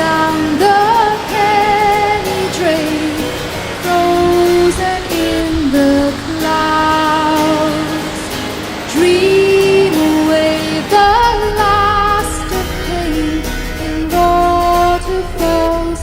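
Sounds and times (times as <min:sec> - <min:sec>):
guitar: 0:00.0 - 0:16.0
woman singing: 0:00.0 - 0:16.0
bass: 0:10.9 - 0:16.0.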